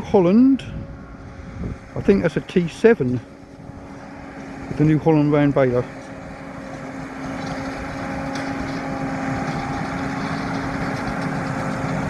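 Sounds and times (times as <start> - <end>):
round baler working: 0.0 - 12.0
tractor engine running: 0.0 - 12.0.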